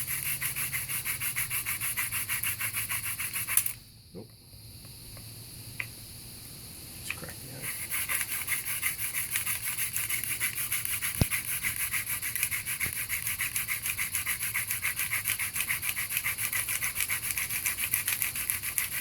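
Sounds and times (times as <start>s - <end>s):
hand drill rasping on wood: 0.0s - 3.8s, 7.6s - 19.0s.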